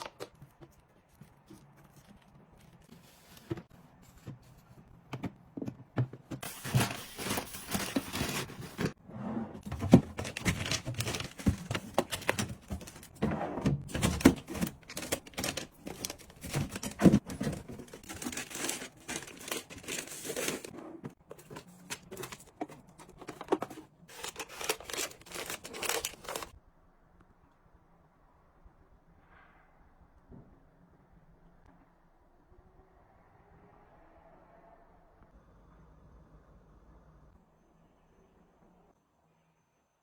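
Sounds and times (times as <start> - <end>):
wrappers crinkling and tearing: 10.1 - 13.1, 13.9 - 20.7, 24.1 - 26.5.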